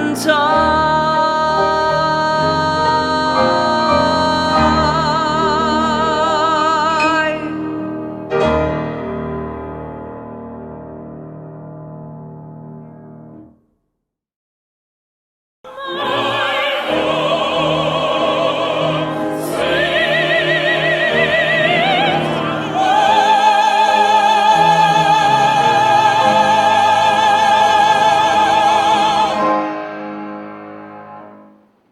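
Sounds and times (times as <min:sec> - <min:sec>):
operatic soprano singing: 0:00.0 - 0:08.2, 0:15.7 - 0:29.8
musical accompaniment: 0:00.0 - 0:13.5, 0:15.7 - 0:31.9.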